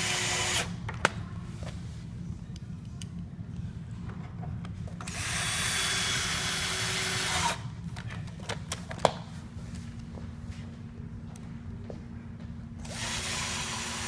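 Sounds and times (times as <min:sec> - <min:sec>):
power drill driving a screw: 0:00.0 - 0:00.7, 0:12.9 - 0:14.0.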